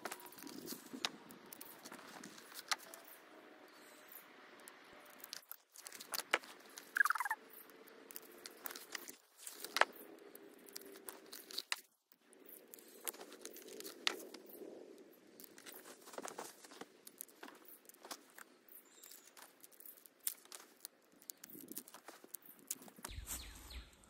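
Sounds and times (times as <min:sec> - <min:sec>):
cardboard and plastic crinkling: 0:15.4 - 0:23.2.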